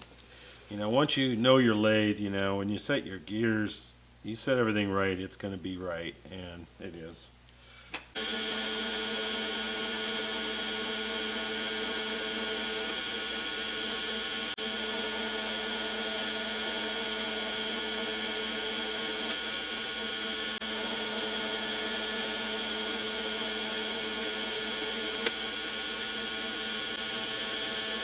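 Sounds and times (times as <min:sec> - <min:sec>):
metal lathe motor whine: 0:08.2 - 0:28.0.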